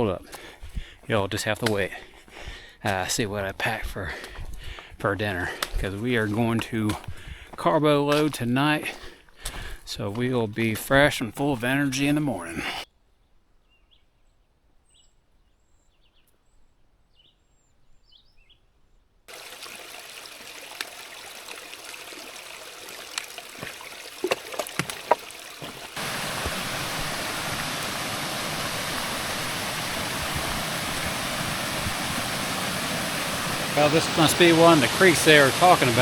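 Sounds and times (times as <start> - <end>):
creek spilling down waterfalls: 0.0 - 2.2, 2.9 - 7.2, 19.3 - 36.0
faint bird chirps: 13.0 - 19.0.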